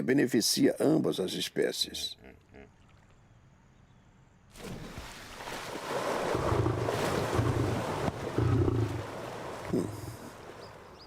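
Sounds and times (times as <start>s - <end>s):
lion roaring: 6.4s - 10.3s.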